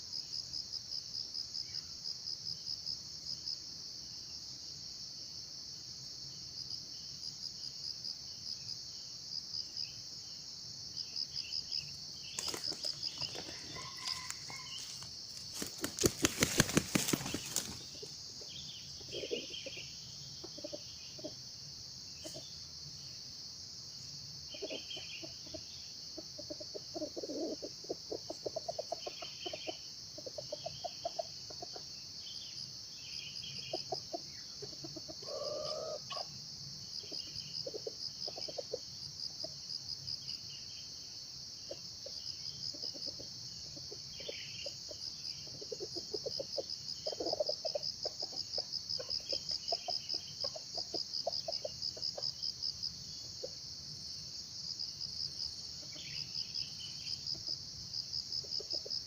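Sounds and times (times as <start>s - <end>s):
insects chirring: 0.0s - 59.0s
junglefowl clucking: 12.4s - 18.1s, 19.0s - 19.8s, 20.4s - 21.4s, 24.5s - 31.9s, 33.6s - 36.4s, 37.1s - 38.8s, 42.7s - 52.4s.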